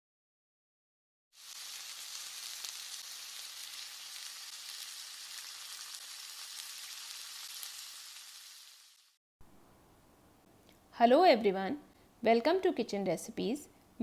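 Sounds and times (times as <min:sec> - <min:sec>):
sizzling hiss with crackles: 0:01.4 - 0:09.2.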